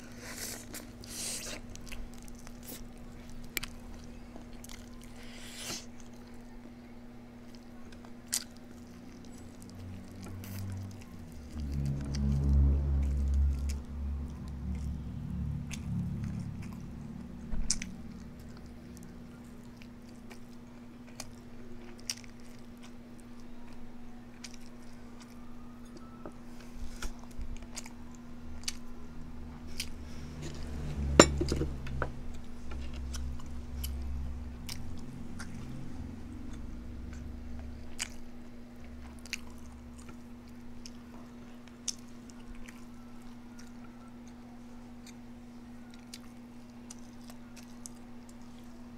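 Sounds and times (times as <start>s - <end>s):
person chewing food: 0.0s - 6.6s, 7.4s - 48.9s
steady low hum: 0.0s - 48.9s.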